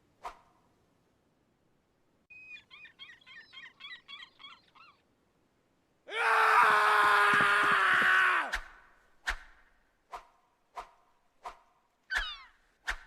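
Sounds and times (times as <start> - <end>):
creature scream-like cry: 6.1 - 8.5.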